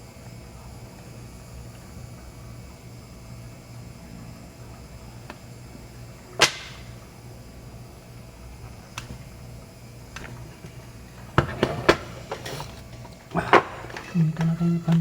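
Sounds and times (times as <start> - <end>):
low steady hum: 0.0 - 15.0
sharp snap or click: 6.4 - 6.9.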